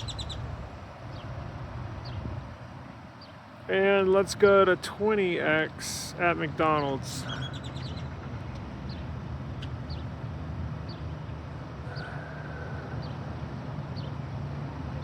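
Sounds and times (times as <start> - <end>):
bird chirping: 0.0 - 1.4, 3.2 - 3.4, 6.6 - 8.2, 8.9 - 14.3
low traffic hum: 0.0 - 15.0.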